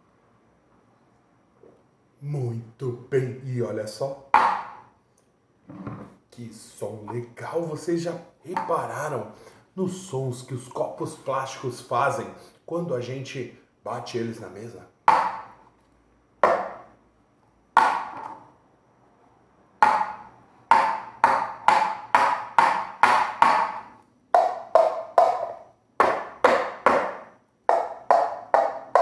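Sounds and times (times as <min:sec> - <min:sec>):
plastic cups knocking on table: 0:04.4 - 0:04.9, 0:15.1 - 0:15.6, 0:16.4 - 0:16.9, 0:17.8 - 0:18.5, 0:19.8 - 0:29.0.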